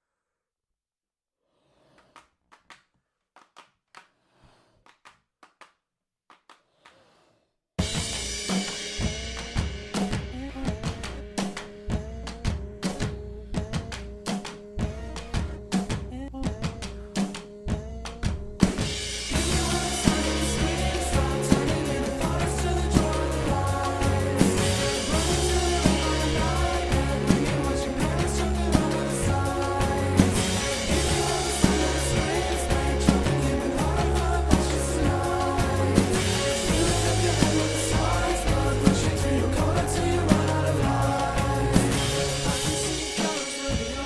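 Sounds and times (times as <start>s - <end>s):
drum kit hits: 7.8s - 11.3s, 18.6s - 44.0s
bass: 7.8s - 44.0s
indie rock song: 19.0s - 44.0s.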